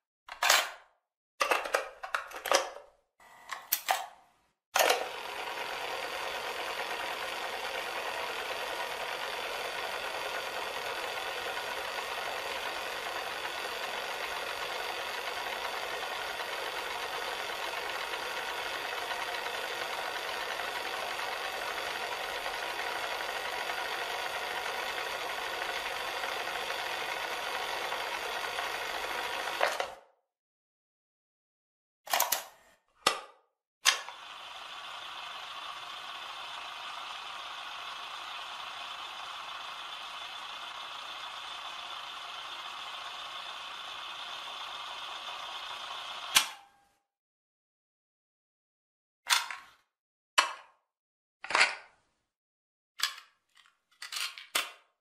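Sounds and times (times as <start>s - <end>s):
tape mechanism whirring: 4.8s - 30.0s, 33.9s - 46.5s.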